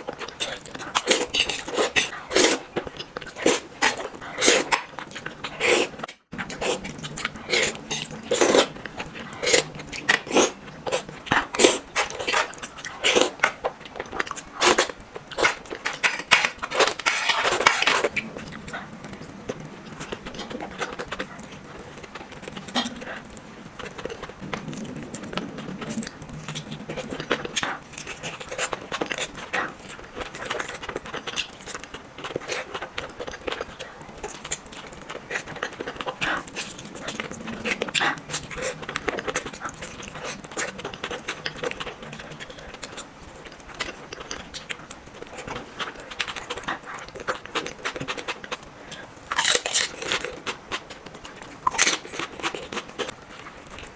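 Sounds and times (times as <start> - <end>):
biting and chewing: 0.0 - 53.9.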